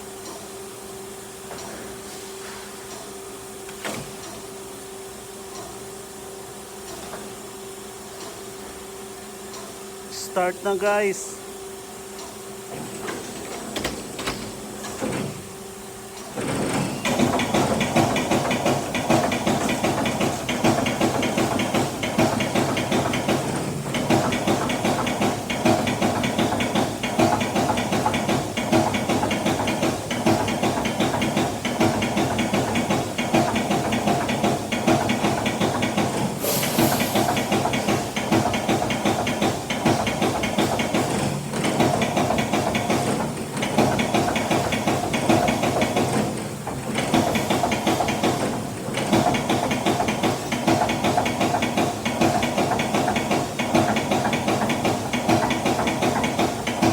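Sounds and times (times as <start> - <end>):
cnc machine hissing: 36.3 - 38.2.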